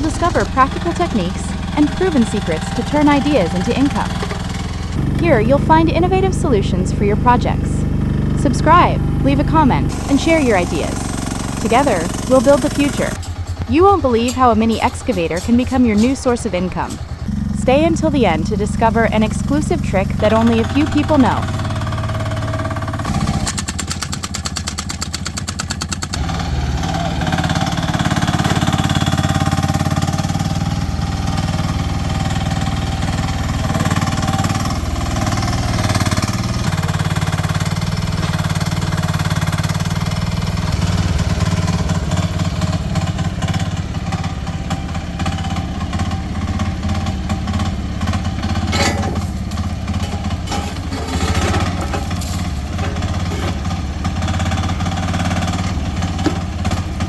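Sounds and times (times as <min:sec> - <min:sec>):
fast even ticking: 0:00.0 - 0:21.8
excavator engine running: 0:00.0 - 0:57.0.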